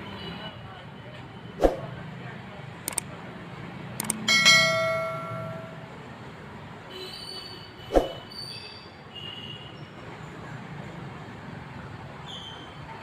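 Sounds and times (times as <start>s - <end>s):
metallic ring: 4.3s - 6.0s.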